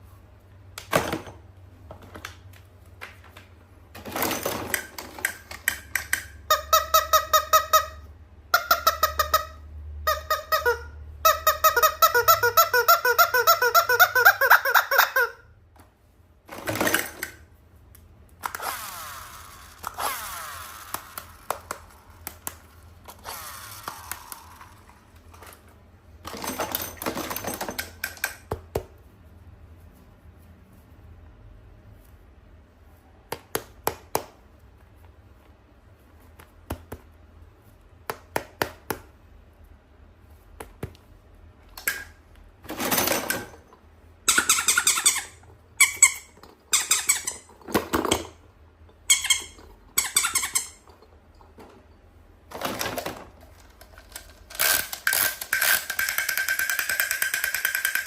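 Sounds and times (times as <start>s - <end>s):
toy squeaking: 5.6s - 15.5s, 44.2s - 47.6s, 49.0s - 51.0s
handling clicks and rustling: 15.1s - 18.8s, 20.9s - 29.2s, 40.6s - 58.0s.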